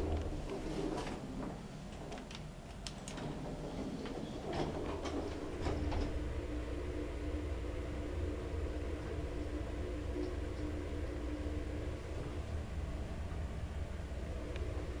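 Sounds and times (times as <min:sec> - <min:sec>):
elevator clicks and rattles: 0:00.0 - 0:06.5
elevator humming: 0:00.0 - 0:15.0.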